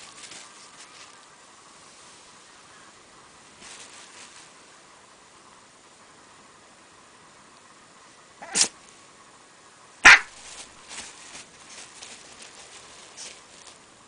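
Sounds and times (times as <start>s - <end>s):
dog sneezing: 8.4s - 8.8s.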